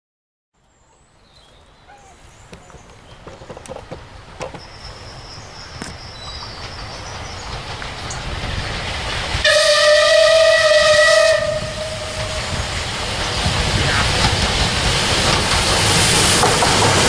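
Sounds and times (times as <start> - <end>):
steam locomotive rumble: 2.4 - 17.0
long train whistle blast: 9.4 - 12.6.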